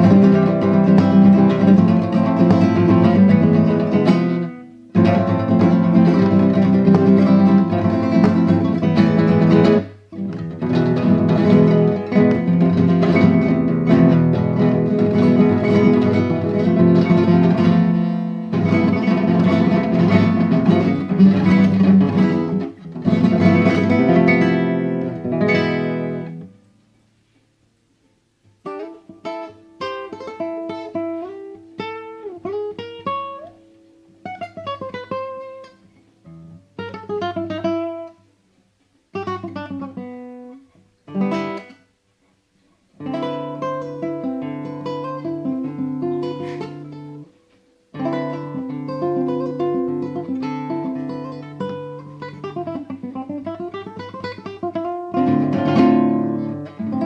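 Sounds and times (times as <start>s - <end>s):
guitar strummed chords: 0.0s - 26.7s, 43.0s - 57.0s
guitar picked notes: 0.0s - 26.8s, 43.0s - 57.0s.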